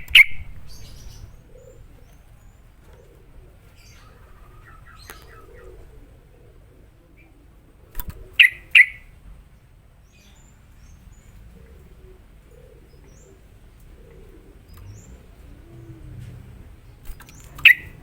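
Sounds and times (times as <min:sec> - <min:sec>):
bird giving sharp calls: 0:00.0 - 0:06.1, 0:08.0 - 0:09.2, 0:17.1 - 0:18.0
faint distant bird chirps: 0:00.0 - 0:18.0
low background noise: 0:00.0 - 0:18.0
click: 0:17.0 - 0:17.7.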